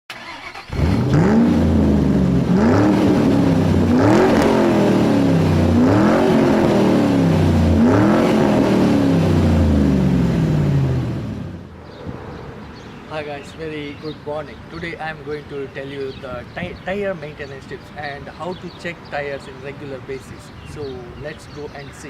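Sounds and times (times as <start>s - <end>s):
car engine revving: 0.1s - 12.7s.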